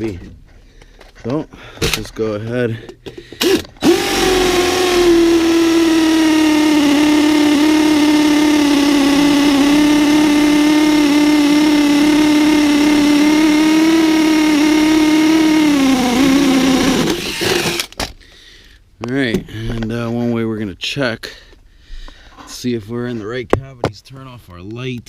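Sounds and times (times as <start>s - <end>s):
power drill boring through wood: 3.4s - 18.1s.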